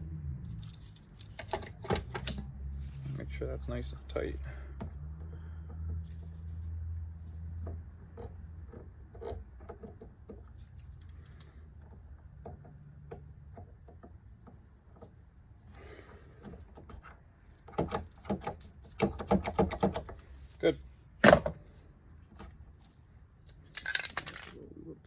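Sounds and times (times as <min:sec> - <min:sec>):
hand tools clicking and scraping: 0:23.4 - 0:24.6.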